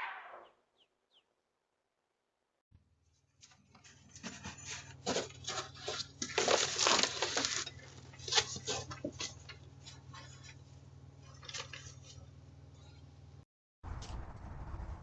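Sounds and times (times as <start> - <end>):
low electrical hum: 2.8 - 14.5
crunching and rustling: 3.3 - 13.0.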